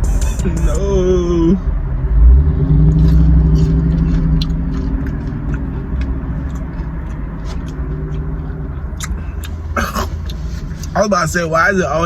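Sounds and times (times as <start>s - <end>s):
car engine idling: 0.0s - 12.0s
person eating crunchily: 2.9s - 10.9s.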